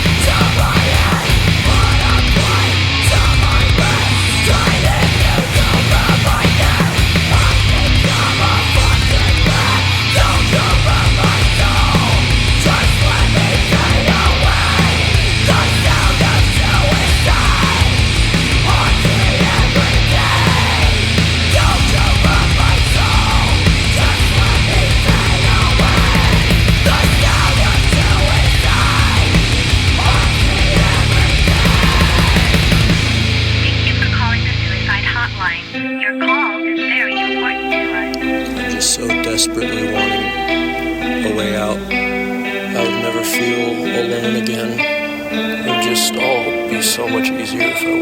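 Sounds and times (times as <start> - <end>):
fast driving drums: 0.0 - 35.4
heavy metal song: 0.0 - 48.0.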